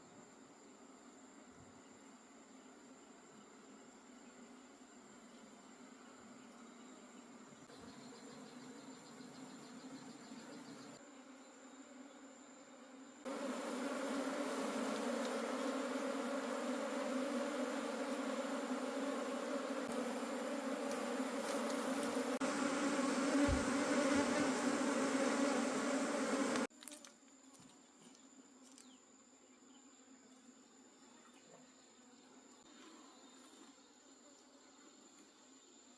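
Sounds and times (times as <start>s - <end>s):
bees buzzing: 5.7s - 26.7s.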